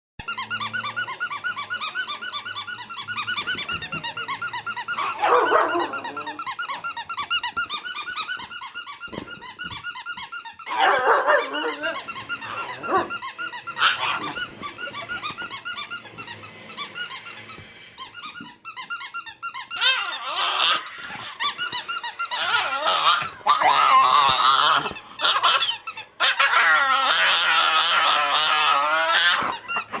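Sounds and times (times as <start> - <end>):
squeaky toy squeaking: 0.2 - 30.0
puppy wavering vocal sounds: 4.9 - 6.9, 10.7 - 15.6, 19.7 - 30.0.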